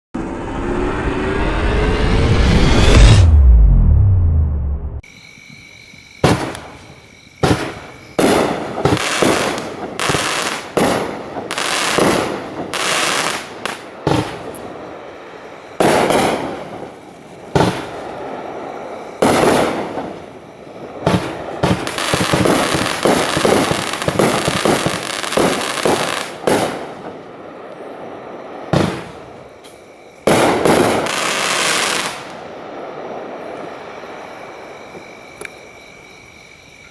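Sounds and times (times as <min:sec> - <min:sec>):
fireworks launching and bursting: 0:06.2 - 0:33.7.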